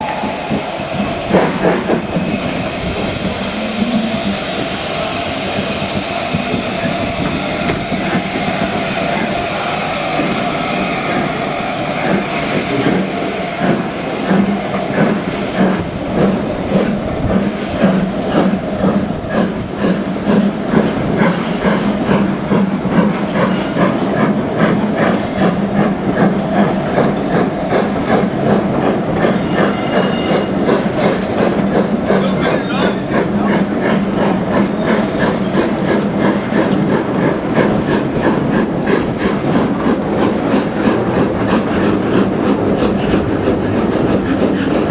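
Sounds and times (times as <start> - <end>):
rhythmic locomotive beats: 0.0 - 44.9
steam locomotive hissing steam: 0.0 - 44.9.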